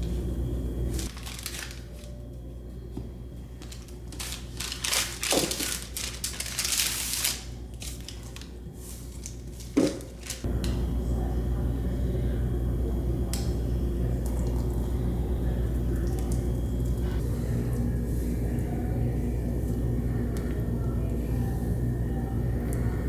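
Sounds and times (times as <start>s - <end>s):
steady low hum: 0.0s - 23.0s
packaging and utensils rustling: 0.9s - 2.2s, 3.6s - 10.5s.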